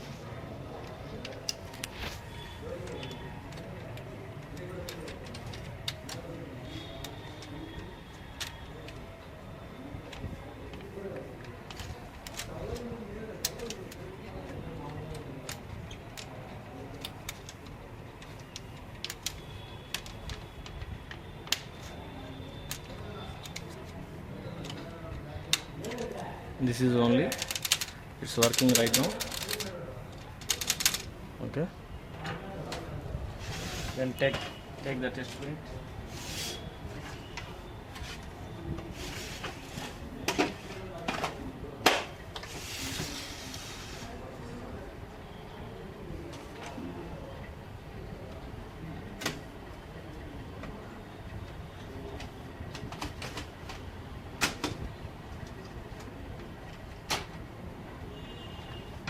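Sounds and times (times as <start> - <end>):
plastic printer parts clicking: 2.7 - 9.1, 10.0 - 21.9, 27.1 - 31.1.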